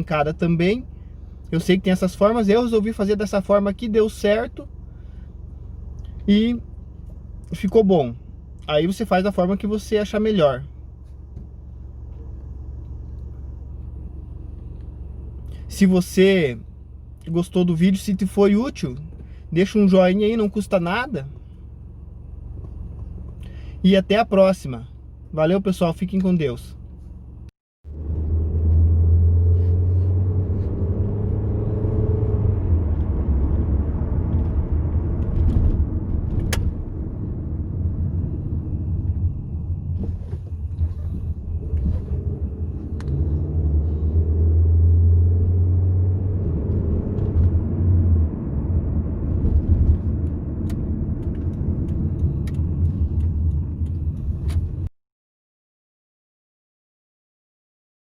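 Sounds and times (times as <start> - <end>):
car engine and road rumble: 0.0 - 54.9.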